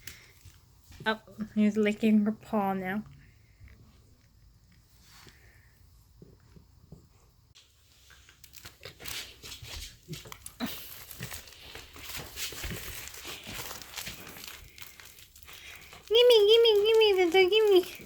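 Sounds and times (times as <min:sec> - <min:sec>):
crinkly toy rustling: 0:07.6 - 0:18.0.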